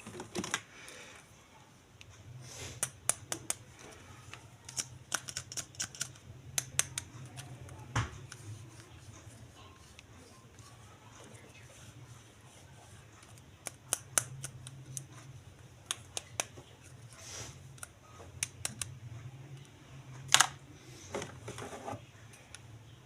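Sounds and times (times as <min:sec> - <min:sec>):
sharp clicks and taps: 0:04.3 - 0:08.4.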